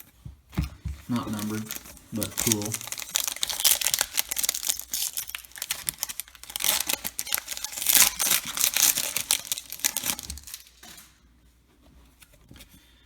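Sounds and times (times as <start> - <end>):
wrapper tearing and crinkling: 1.1 - 11.2.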